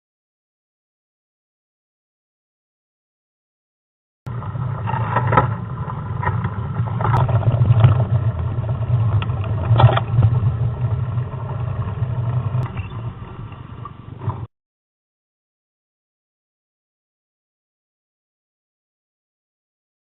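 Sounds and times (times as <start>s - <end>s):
bike rumbling over rough ground: 4.3s - 14.5s
clicks and rattles: 8.9s - 10.5s.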